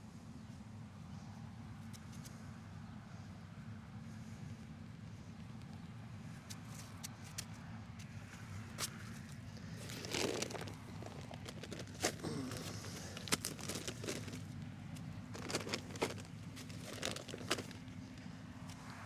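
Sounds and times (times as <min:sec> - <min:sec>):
crinkling and rustling: 0:08.9 - 0:18.8.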